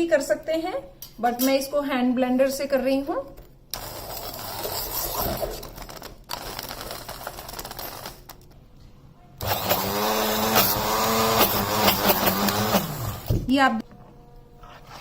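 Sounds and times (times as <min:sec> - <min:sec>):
electric hand blender running: 0:09.4 - 0:13.3.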